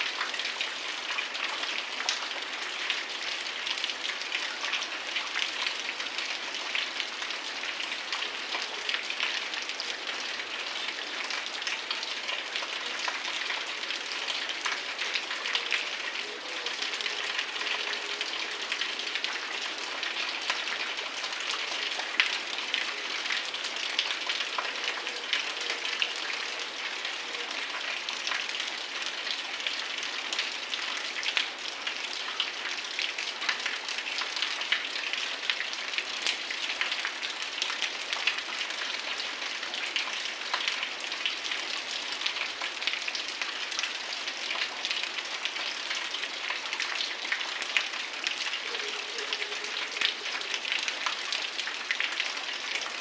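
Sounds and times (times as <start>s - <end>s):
heavy rain falling: 0.1s - 53.0s.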